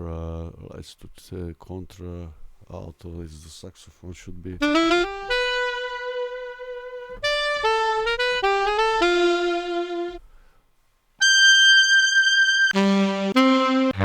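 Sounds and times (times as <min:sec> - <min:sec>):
sampled saxophone notes: 0:04.6 - 0:10.5, 0:11.2 - 0:14.0.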